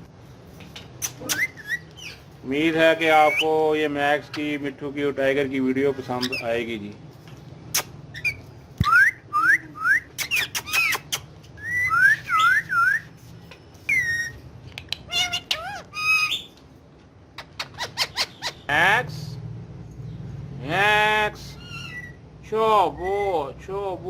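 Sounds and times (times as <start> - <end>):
parrot chirping and whistling: 1.0 - 2.3, 3.2 - 3.5, 7.7 - 13.2, 13.8 - 16.6, 17.4 - 18.7, 21.6 - 22.2.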